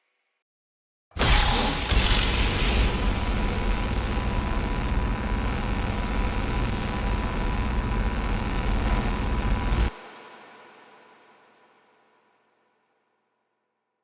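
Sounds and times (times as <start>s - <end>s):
lightsaber electric hum: 1.2s - 10.0s.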